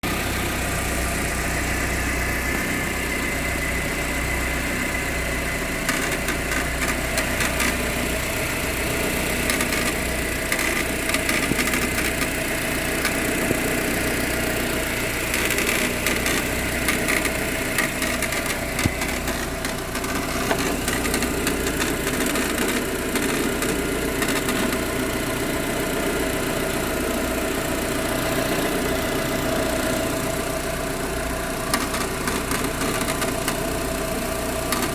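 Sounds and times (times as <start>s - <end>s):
car engine idling: 0.0s - 34.9s
engine rattle clicks: 5.7s - 34.9s.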